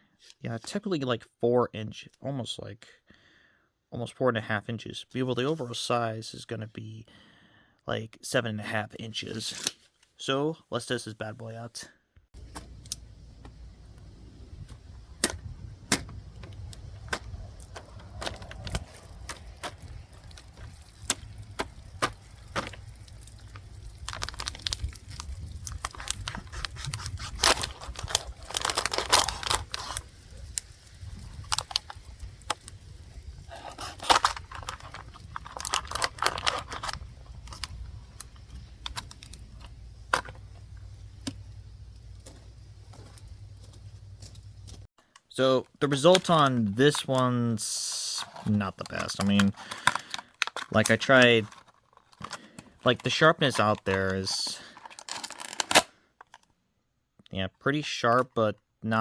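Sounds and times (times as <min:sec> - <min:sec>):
scraping and crinkling plastic: 0:14.6 - 0:45.2, 0:45.8 - 0:56.5.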